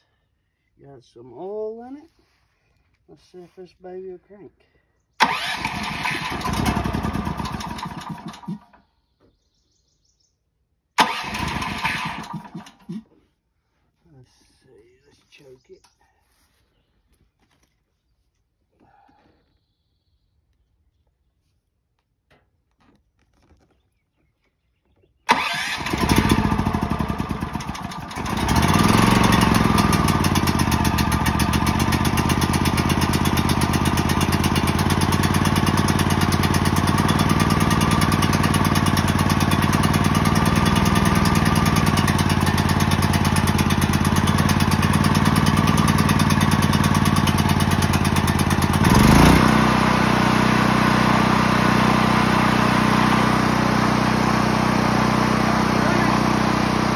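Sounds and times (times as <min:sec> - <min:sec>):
generator engine running: 0:05.2 - 0:08.7, 0:11.0 - 0:13.1, 0:25.3 - 0:56.9.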